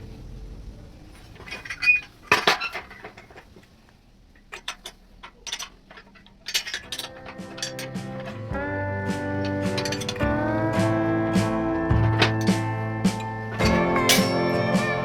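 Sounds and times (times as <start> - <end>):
metal parts clinking: 1.2 - 3.6, 4.4 - 8.5, 9.8 - 10.2.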